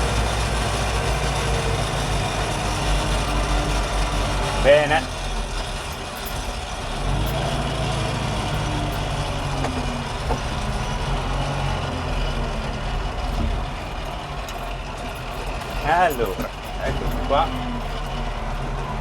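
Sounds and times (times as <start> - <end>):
tractor diesel engine running: 0.0 - 19.0.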